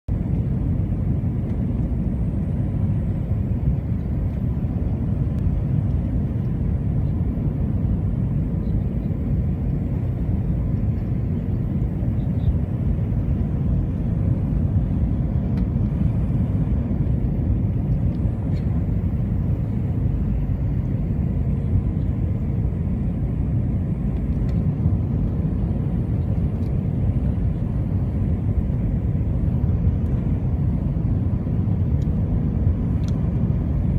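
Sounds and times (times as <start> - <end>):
faint steady hum: 0.1 - 33.9
jet engines rumbling: 0.1 - 33.9.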